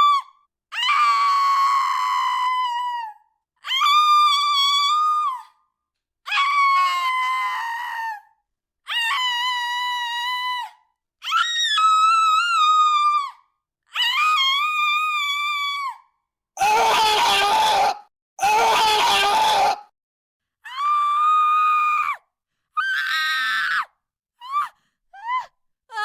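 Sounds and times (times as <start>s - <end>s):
woman screaming in pain: 16.6s - 19.8s.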